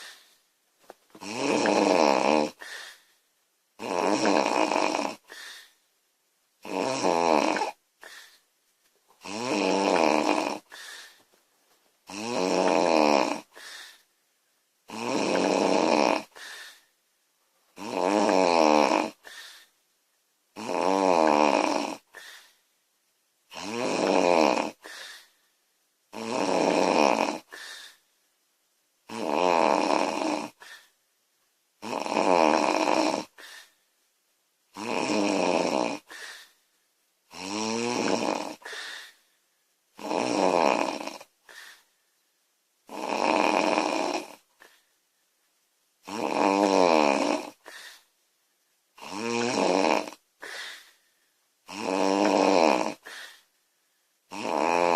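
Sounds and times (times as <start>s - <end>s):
woman snoring loudly: 1.2s - 2.8s, 3.8s - 5.4s, 6.6s - 8.2s, 9.2s - 10.9s, 12.1s - 13.8s, 14.9s - 16.6s, 17.8s - 19.4s, 20.6s - 22.3s, 23.5s - 25.0s, 26.1s - 27.7s, 29.1s - 30.8s, 31.8s - 33.7s, 34.7s - 36.4s, 37.3s - 39.2s, 40.0s - 41.8s, 42.9s - 44.4s, 46.0s - 47.9s, 49.0s - 50.8s, 51.7s - 53.4s, 54.3s - 54.9s
faint breath out: 10.7s - 11.3s, 13.5s - 14.1s, 16.3s - 16.9s, 22.1s - 22.7s, 33.4s - 33.8s, 36.1s - 36.6s, 38.6s - 39.3s, 41.4s - 42.0s, 47.6s - 48.1s, 50.4s - 51.4s, 53.0s - 53.5s.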